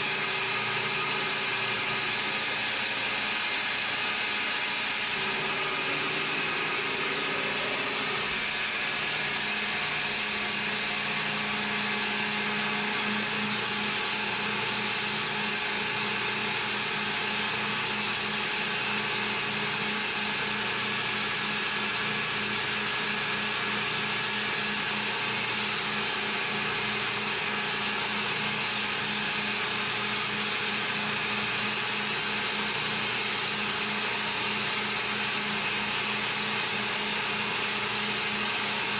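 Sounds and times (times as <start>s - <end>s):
milling machine humming and hissing: 0.0s - 38.9s.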